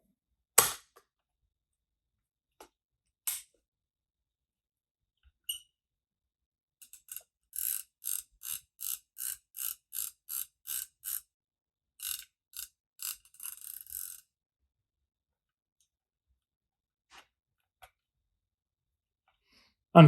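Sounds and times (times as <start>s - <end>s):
camera film advance ratcheting: 6.8s - 11.2s, 12.0s - 14.2s.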